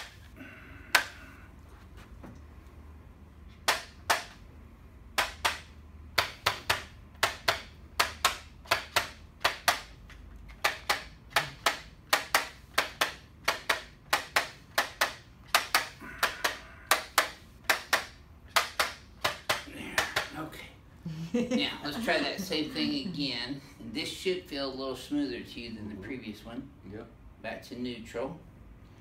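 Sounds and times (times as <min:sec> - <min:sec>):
sharp percussive taps: 0:05.1 - 0:10.0, 0:10.6 - 0:20.3.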